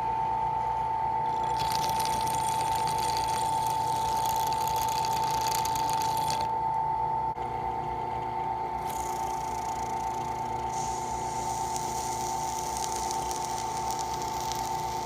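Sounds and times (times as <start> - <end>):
hissing: 8.8 - 15.0.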